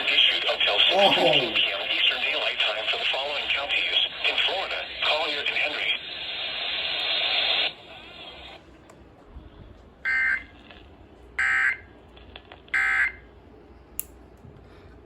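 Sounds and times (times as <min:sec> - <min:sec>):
static hiss: 0:03.8 - 0:08.6.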